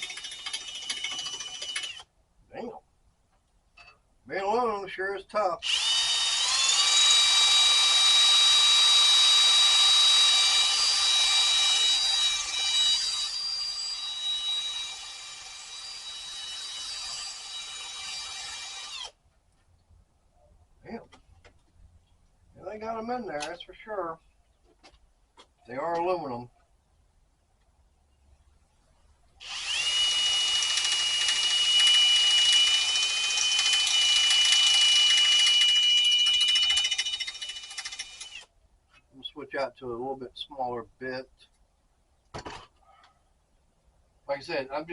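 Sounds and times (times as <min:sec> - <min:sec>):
power drill whining: 0:00.0 - 0:02.1, 0:05.6 - 0:19.2, 0:29.4 - 0:38.5.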